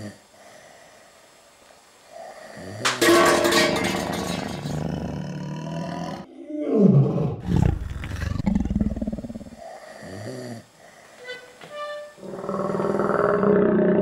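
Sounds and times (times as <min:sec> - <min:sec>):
man snoring loudly: 0:02.1 - 0:02.8, 0:04.8 - 0:06.4, 0:08.8 - 0:10.8, 0:12.2 - 0:14.0.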